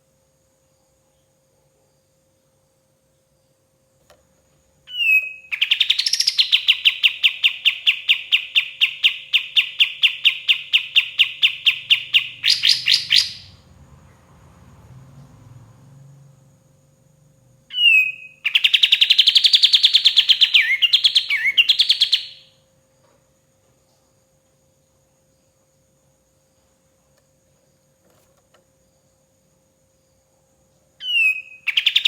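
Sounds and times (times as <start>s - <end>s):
bird song with rapid sharp notes: 4.9s - 14.2s, 17.7s - 22.5s, 31.0s - 32.0s.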